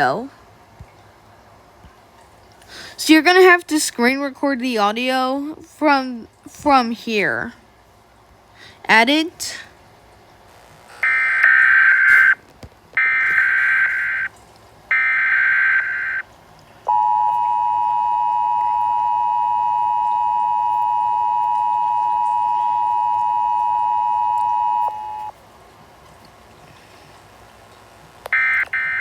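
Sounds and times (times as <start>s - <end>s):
buzzy data tone bursts: 11.0s - 12.4s, 13.0s - 14.3s, 14.9s - 16.2s, 16.9s - 25.3s
two-tone attention signal: 16.9s - 25.3s.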